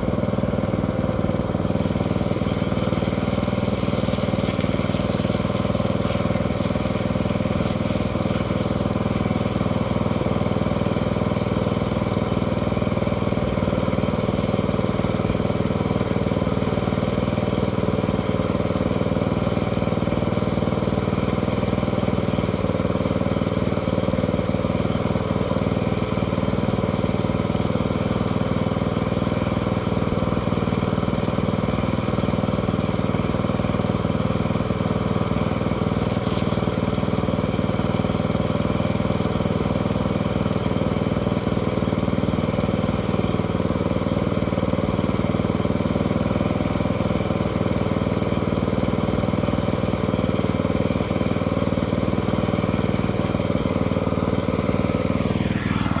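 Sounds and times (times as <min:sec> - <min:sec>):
engine running steadily: 0:00.0 - 0:56.0.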